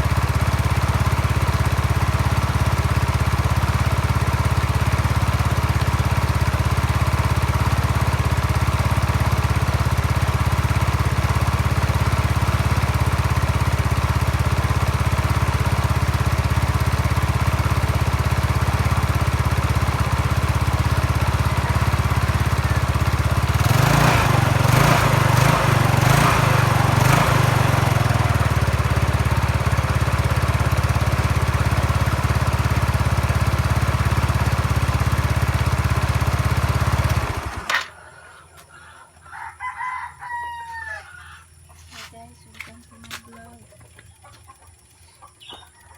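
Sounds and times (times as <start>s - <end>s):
scooter engine idling and revving: 0.0s - 38.0s, 41.5s - 45.9s.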